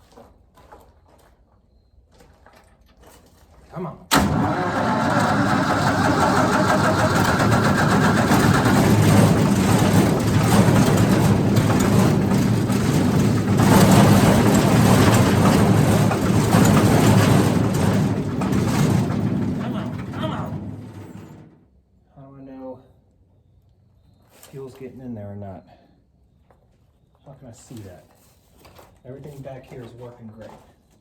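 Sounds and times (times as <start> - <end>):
wood chipper engine running unevenly: 4.1 - 21.6.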